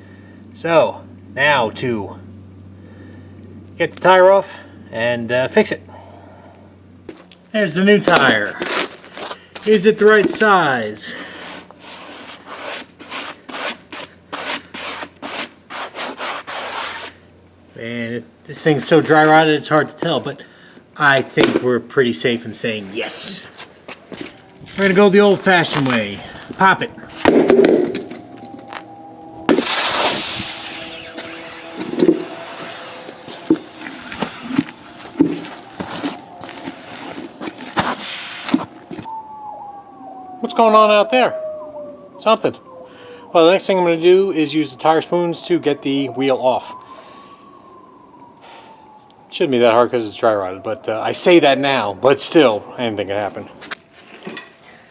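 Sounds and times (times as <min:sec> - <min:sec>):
rubbing on rubber tires: 0:11.2 - 0:17.2, 0:29.6 - 0:38.8.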